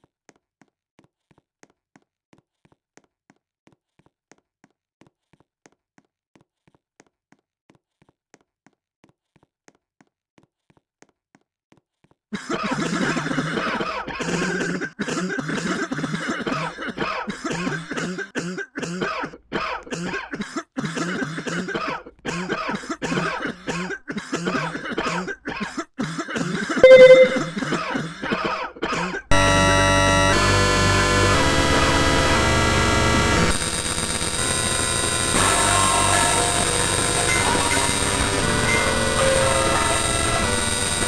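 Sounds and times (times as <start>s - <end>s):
person coughing: 12.4s - 29.3s
loud steady-pitched tone: 26.8s - 27.8s, 29.3s - 41.0s.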